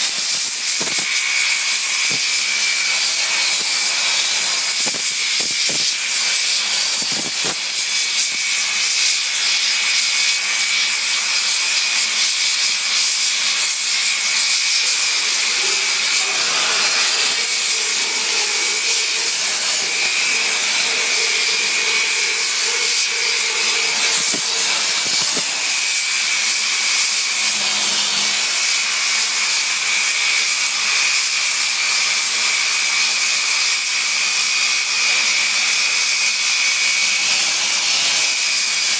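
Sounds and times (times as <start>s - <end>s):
cutting torch hissing and whistling: 0.0s - 8.5s, 10.4s - 29.3s.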